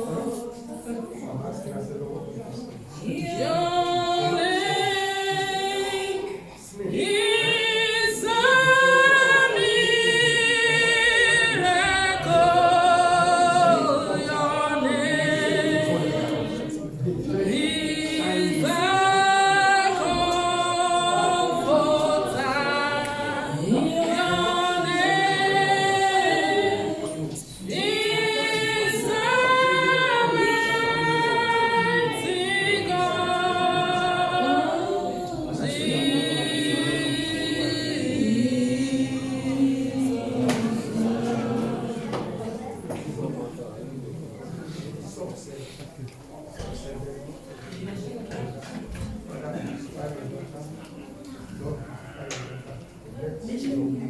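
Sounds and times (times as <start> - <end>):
group singing a cappella gospel: 2.8 - 43.7.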